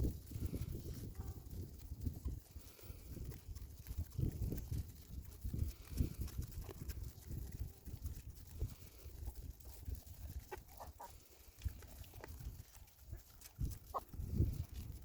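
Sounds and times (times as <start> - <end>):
rustling: 0.0 - 15.0
farm animal calls: 9.2 - 12.4, 13.0 - 14.2.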